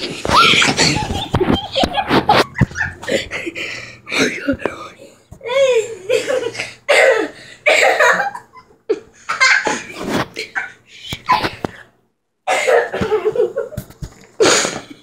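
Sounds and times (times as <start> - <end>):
person laughing: 0.0 - 4.6.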